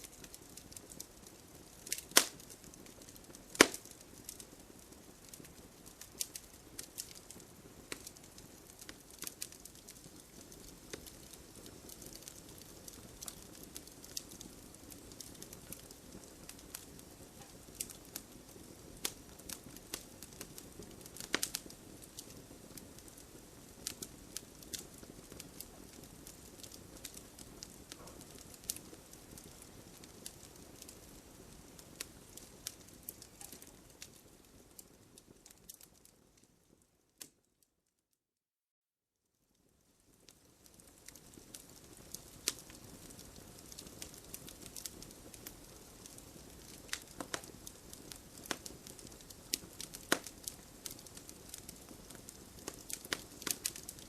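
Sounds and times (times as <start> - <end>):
fire low hiss: 0.0 - 36.8, 39.6 - 54.0
wood fire crackling and popping: 0.0 - 37.5, 39.6 - 54.0.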